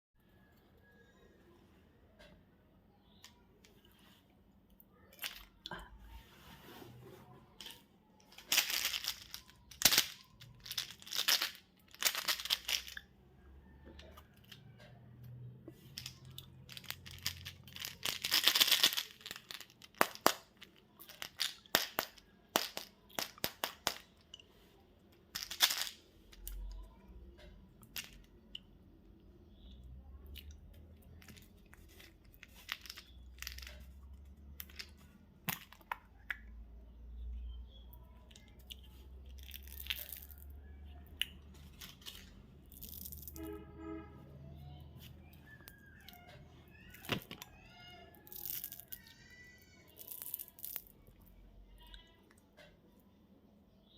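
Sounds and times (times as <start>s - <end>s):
wrappers ripping and crinkling: 15.9s - 23.8s.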